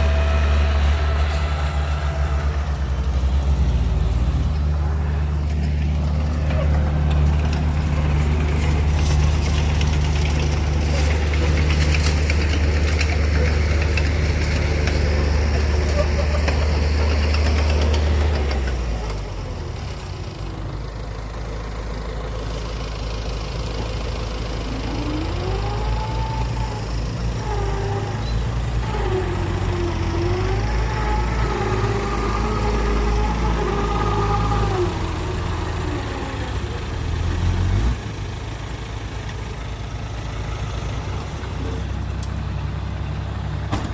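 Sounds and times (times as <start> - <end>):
heavy engine running: 0.0 - 43.9.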